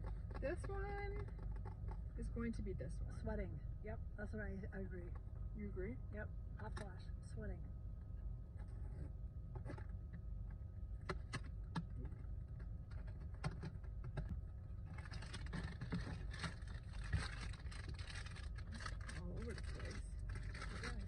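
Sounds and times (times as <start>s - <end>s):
steady low rumble: 0.0s - 21.0s
cardboard rustling: 14.9s - 21.0s.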